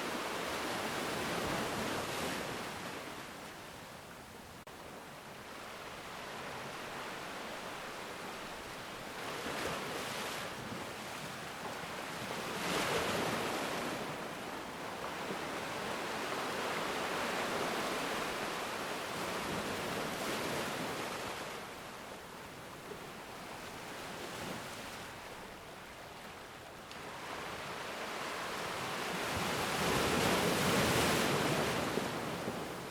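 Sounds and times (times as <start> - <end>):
ocean waves breaking: 26.2 - 32.9.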